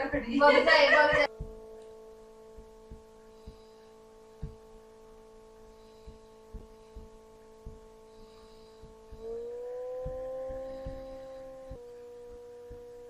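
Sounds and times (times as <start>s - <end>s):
faint steady hum: 0.0s - 13.0s
soft low thumps: 0.0s - 13.0s.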